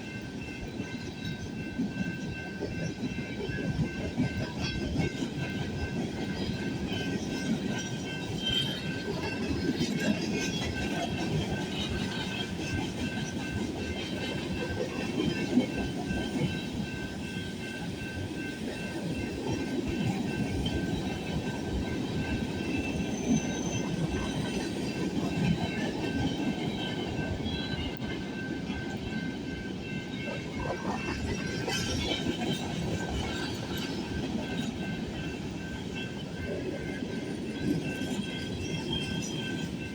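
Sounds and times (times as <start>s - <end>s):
freight train rumbling: 0.0s - 39.9s.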